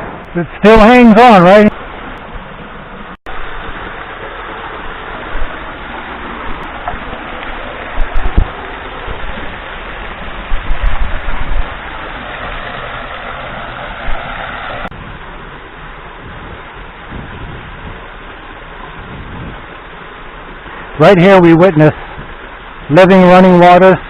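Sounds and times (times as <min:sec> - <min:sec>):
waterfall splashing into pool: 0:03.3 - 0:24.0
low thuds: 0:07.9 - 0:09.6.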